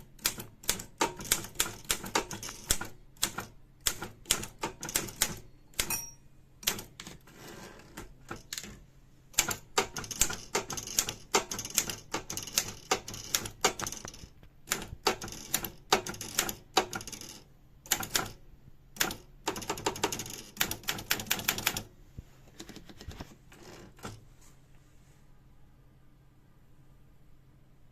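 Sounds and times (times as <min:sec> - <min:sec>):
typewriter keystrokes: 0:00.0 - 0:06.0, 0:06.6 - 0:07.2, 0:07.9 - 0:18.4, 0:19.0 - 0:21.9.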